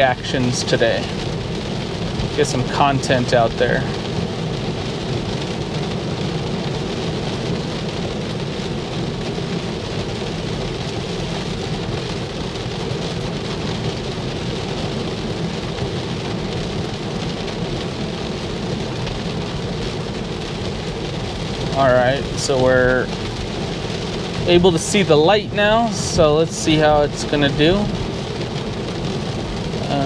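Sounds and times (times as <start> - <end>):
heavy rain on a car roof: 0.0 - 30.0.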